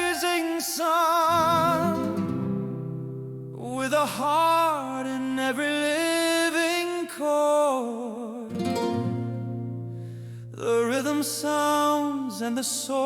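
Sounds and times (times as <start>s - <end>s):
mariachi-style song with vibrato: 0.0s - 4.0s
strummed guitar: 1.3s - 4.0s, 8.6s - 12.0s.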